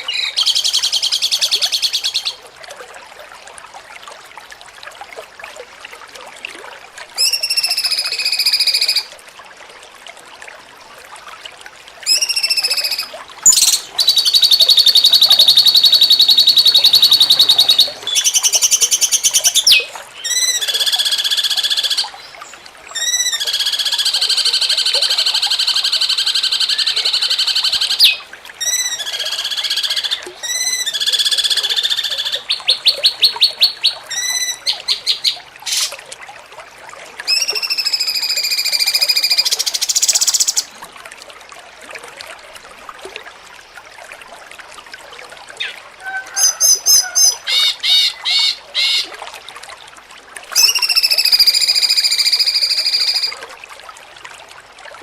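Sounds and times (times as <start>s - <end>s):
bird swooping chirps: 13.5s - 19.9s.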